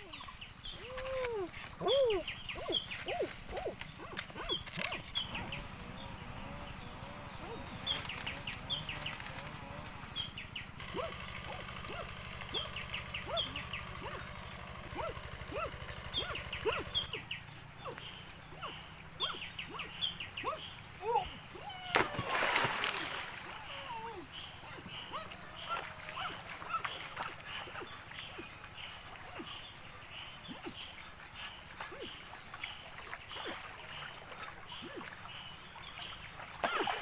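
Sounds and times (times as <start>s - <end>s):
birds chirping: 0.0s - 37.0s
low hum: 2.4s - 28.8s.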